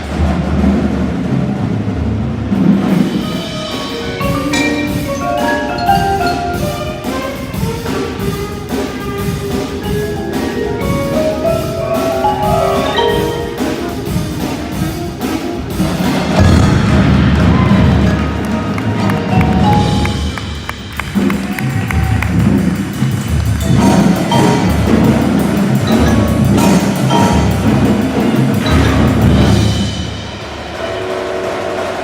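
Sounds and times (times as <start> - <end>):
steady drum beat: 0.0 - 32.0
marimba and xylophone runs: 3.1 - 8.5, 9.8 - 16.0, 17.6 - 30.3.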